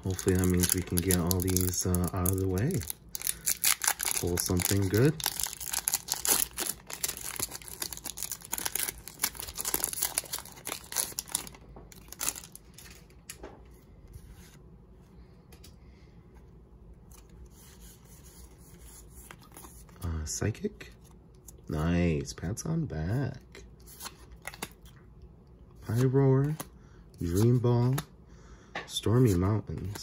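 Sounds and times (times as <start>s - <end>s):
foil wrapper crinkling and tearing: 0.0s - 13.0s.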